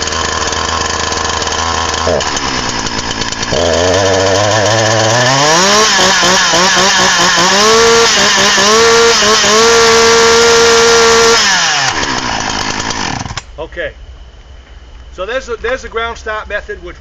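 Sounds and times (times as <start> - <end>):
chainsaw engine revving: 0.0 - 13.4.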